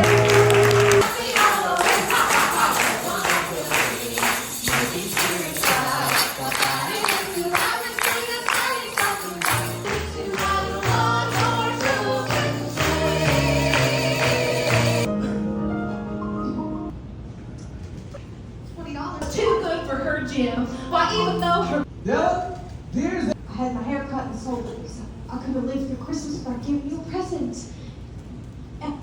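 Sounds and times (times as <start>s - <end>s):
stage show singing: 0.0s - 15.1s.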